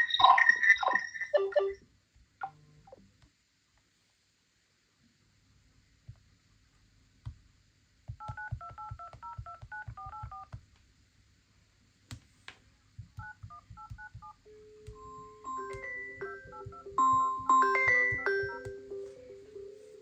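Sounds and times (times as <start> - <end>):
phone keypad touch-tone beeps: 8.2 - 10.5, 13.2 - 19.4
phone ringtone melody: 13.2 - 20.0.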